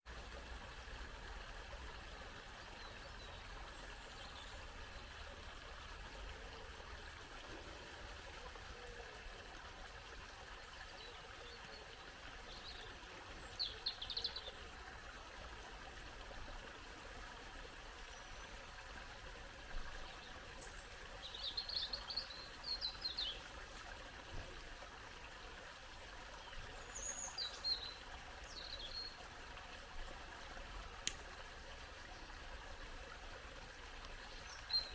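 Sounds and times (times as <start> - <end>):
brook babbling: 0.1 - 34.9
songbirds singing: 2.2 - 5.2, 10.4 - 14.7, 20.0 - 23.8, 26.3 - 29.2, 34.0 - 34.9.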